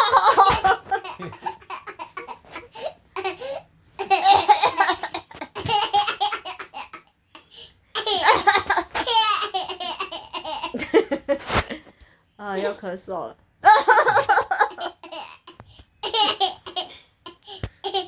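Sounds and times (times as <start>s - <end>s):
young child laughing: 0.0s - 6.9s, 8.0s - 11.7s, 13.6s - 15.4s.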